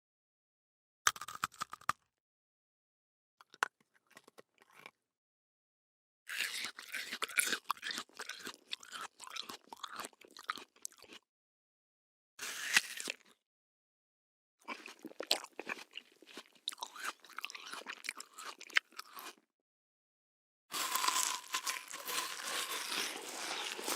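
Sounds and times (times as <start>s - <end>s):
crunchy bite into crisp food: 1.1s - 2.0s, 6.3s - 11.2s, 12.4s - 13.4s, 14.7s - 19.4s, 20.7s - 23.9s
crunchy chewing: 1.1s - 2.0s, 6.3s - 11.2s, 14.7s - 19.4s, 20.7s - 23.9s.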